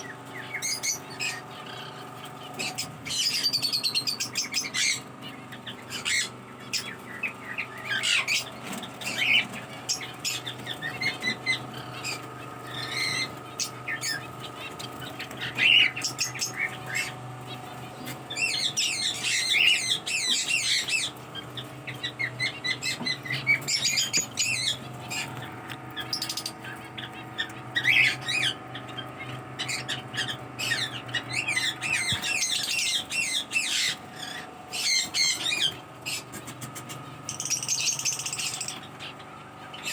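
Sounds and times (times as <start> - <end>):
parrots chirping and squawking: 0.0 - 39.9
steady background hum: 0.0 - 39.9.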